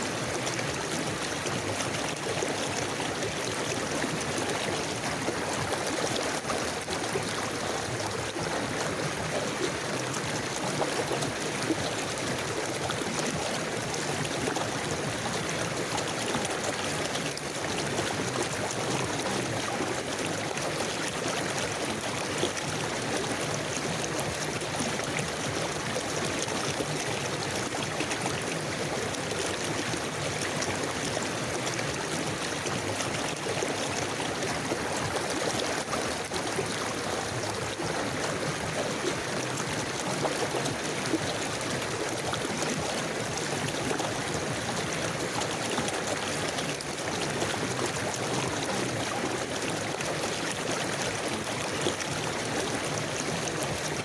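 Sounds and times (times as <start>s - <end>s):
river water rushing and gurgling: 0.0s - 54.0s.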